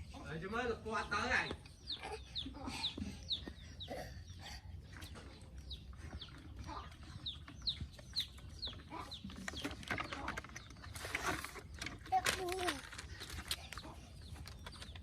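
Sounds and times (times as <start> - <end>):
chick chirping: 0.4 - 10.9.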